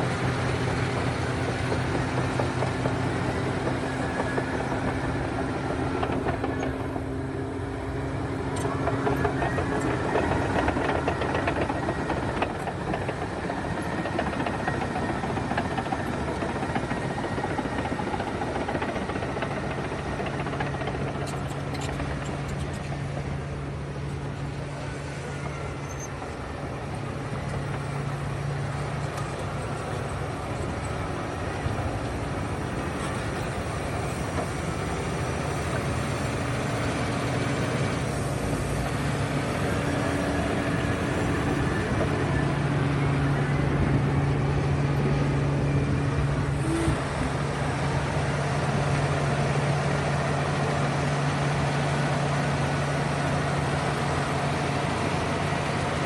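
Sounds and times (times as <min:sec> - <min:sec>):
heavy vehicle engine humming: 0:00.0 - 0:56.0.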